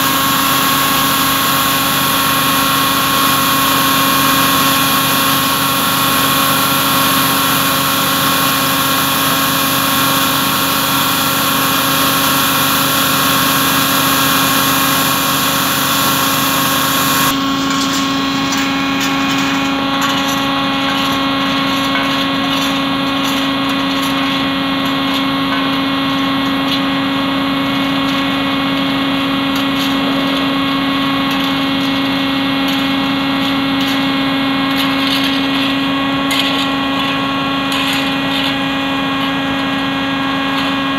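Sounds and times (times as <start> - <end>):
engine idling: 0.0 - 40.9.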